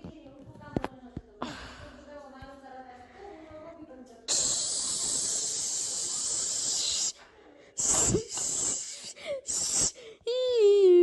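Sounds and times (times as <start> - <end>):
loud steady hiss: 4.3 - 7.2, 7.8 - 10.0.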